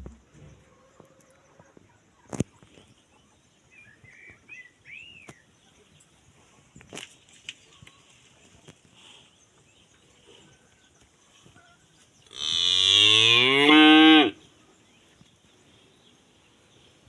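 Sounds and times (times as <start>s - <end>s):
cow mooing: 12.4s - 14.4s.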